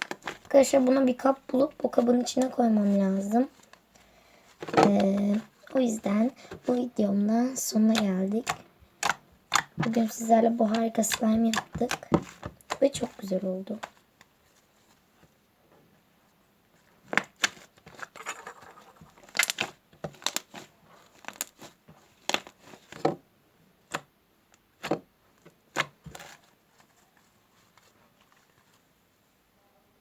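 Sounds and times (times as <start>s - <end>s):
slime popping and crackling: 17.2s - 20.6s.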